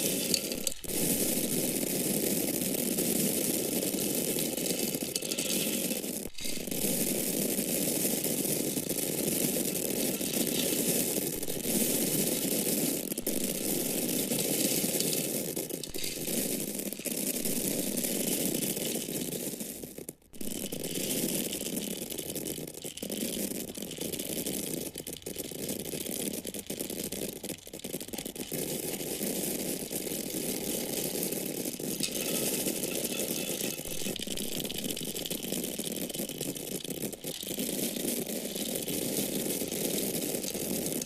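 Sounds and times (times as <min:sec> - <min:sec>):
dry corn kernels pouring: 0:00.0 - 0:41.0.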